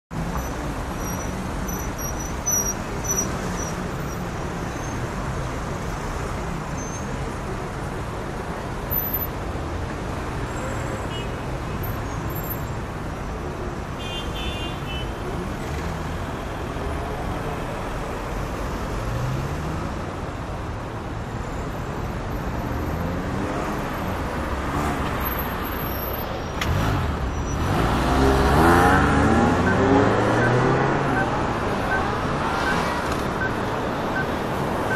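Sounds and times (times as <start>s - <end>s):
heavy street traffic: 0.0s - 34.9s
vehicle accelerating close by: 26.6s - 31.2s.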